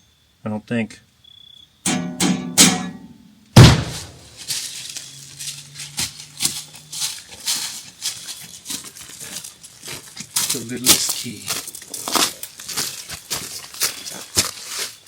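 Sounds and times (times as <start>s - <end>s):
plucked musical notes: 1.9s - 3.2s
sharp loud knock: 1.9s - 4.2s.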